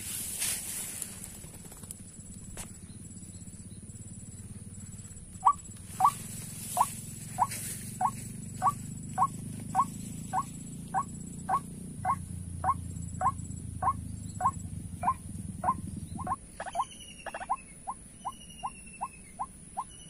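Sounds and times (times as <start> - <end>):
waterhen calling: 5.4 - 20.0.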